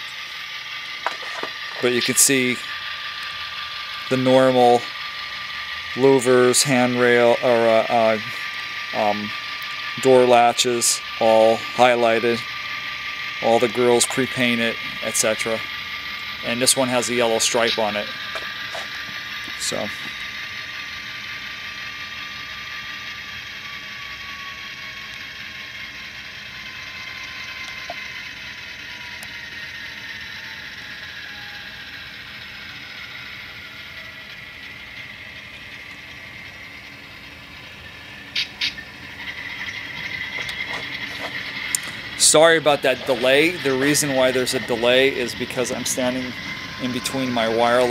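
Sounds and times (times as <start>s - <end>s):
model locomotive diesel engine sound: 0.0s - 47.9s.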